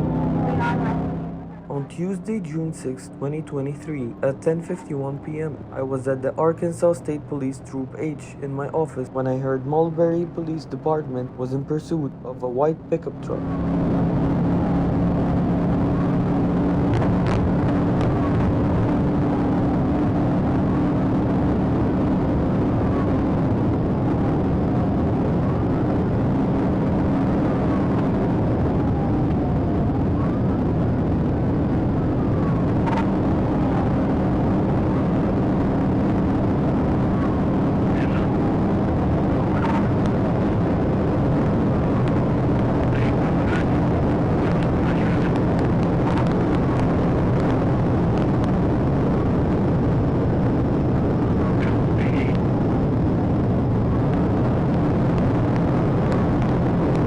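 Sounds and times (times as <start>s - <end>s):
siren wailing: 0.0s - 5.8s, 27.4s - 47.8s
car engine and road noise: 0.0s - 57.0s.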